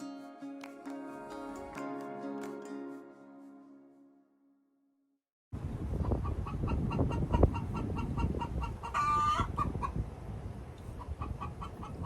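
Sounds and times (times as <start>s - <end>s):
chickens clucking: 6.0s - 10.0s, 10.9s - 12.0s.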